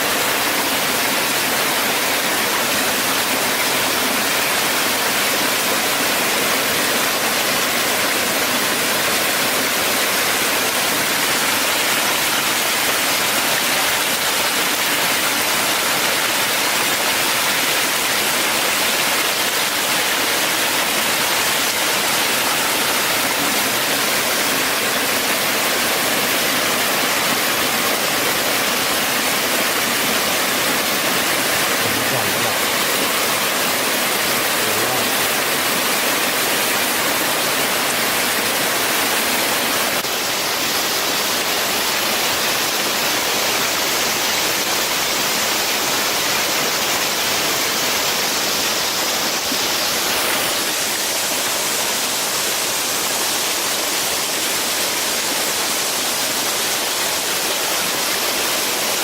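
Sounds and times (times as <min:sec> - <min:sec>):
rushing water: 0:00.0 - 0:59.0.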